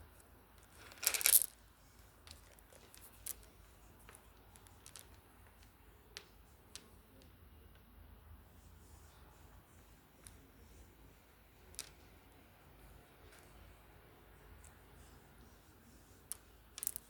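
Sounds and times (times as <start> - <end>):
clatter of small hard objects: 0.6 - 1.6, 2.2 - 5.2, 16.3 - 17.0.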